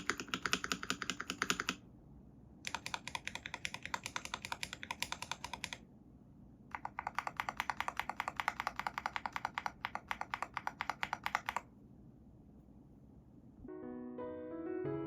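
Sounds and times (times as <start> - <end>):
mechanical keyboard typing: 0.0 - 1.8, 2.6 - 5.8, 6.7 - 11.7.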